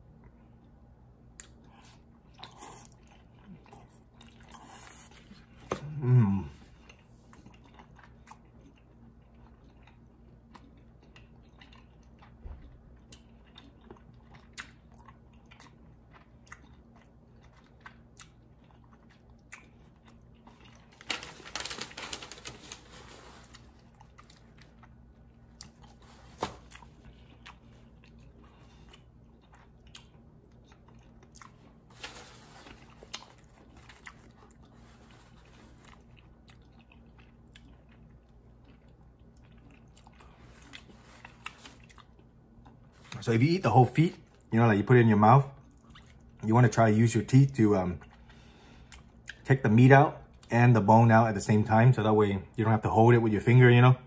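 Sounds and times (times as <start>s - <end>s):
person chewing wetly: 0.2s - 21.1s, 23.5s - 31.9s, 32.6s - 43.2s, 45.6s - 46.4s, 48.0s - 49.4s.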